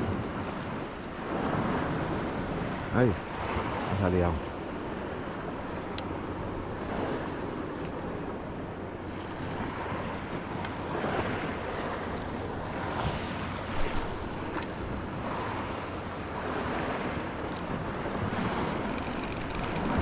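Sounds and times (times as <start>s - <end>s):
sea waves washing: 0.0s - 20.0s
wind buffeting microphone: 4.6s - 20.0s.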